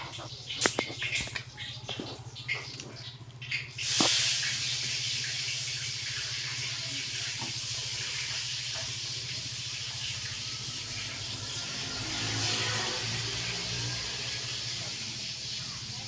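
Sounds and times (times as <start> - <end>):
air hissing from tube: 3.8 - 4.8.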